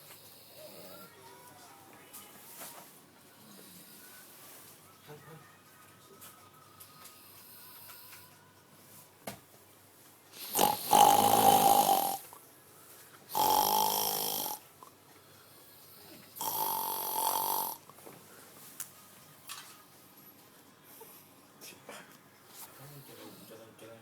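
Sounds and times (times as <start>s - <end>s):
loud snoring: 10.4s - 12.3s, 13.3s - 14.7s, 16.0s - 17.8s.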